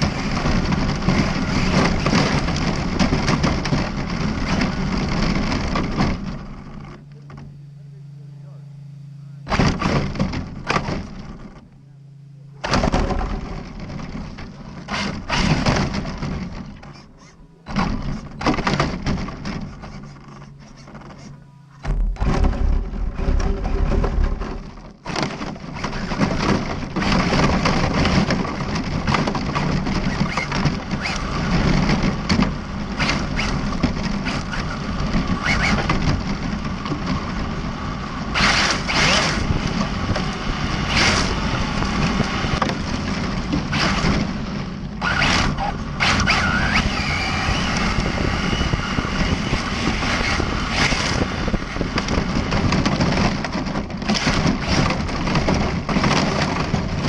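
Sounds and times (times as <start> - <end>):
electric motor whine: 0.0 - 53.1.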